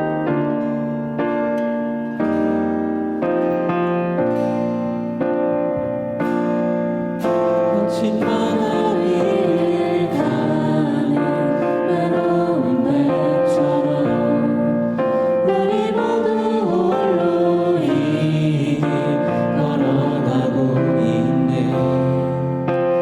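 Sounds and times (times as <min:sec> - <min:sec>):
keyboard accompaniment: 0:00.0 - 0:23.0
group singing worship song: 0:06.2 - 0:23.0.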